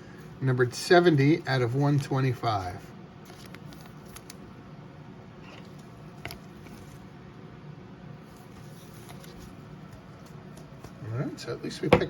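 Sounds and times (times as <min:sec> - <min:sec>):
low background hum: 0:00.0 - 0:12.0
trading cards handled: 0:03.2 - 0:04.5, 0:08.3 - 0:11.0.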